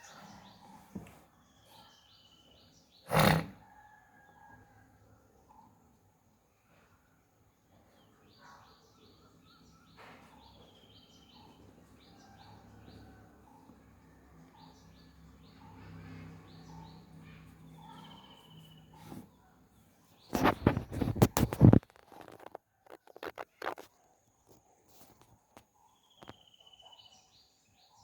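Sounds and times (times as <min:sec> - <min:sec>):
birds chirping: 0:00.0 - 0:03.9, 0:07.7 - 0:23.9
rustling and knocking: 0:20.3 - 0:23.9.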